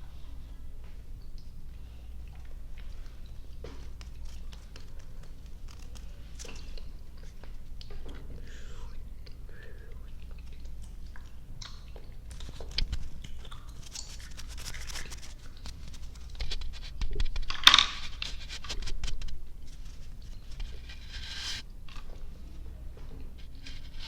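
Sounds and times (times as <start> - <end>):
chewing sticky candy: 1.2 - 17.7
wet mouth clicks and smacks: 6.4 - 17.5.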